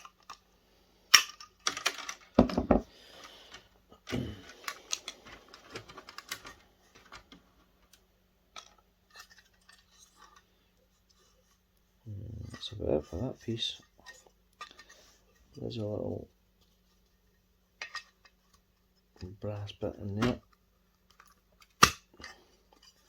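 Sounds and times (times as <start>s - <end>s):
small parts clicking and clattering: 0.0s - 0.5s, 1.1s - 10.5s, 13.7s - 15.1s, 17.8s - 18.6s, 20.2s - 23.0s.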